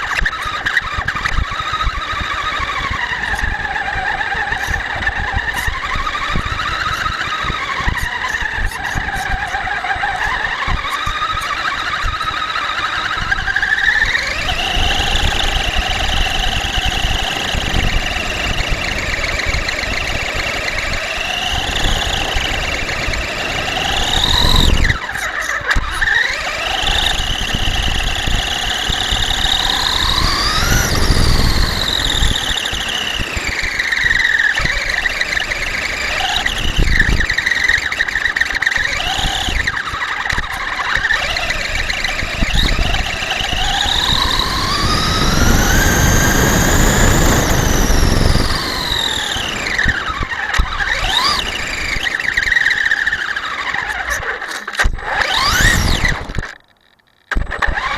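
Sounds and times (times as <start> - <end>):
rough tyre and ground noise: 0.0 - 57.9
toy truck electric motor whining: 0.0 - 57.9.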